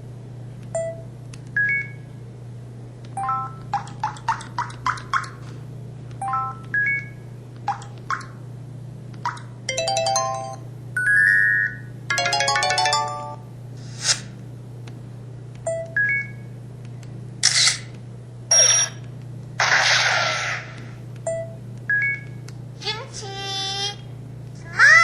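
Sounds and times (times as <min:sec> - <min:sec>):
low steady hum: 0:00.0 - 0:25.0
phone melodic chimes: 0:09.7 - 0:10.6, 0:12.1 - 0:13.4
short beeps: 0:18.5 - 0:19.0.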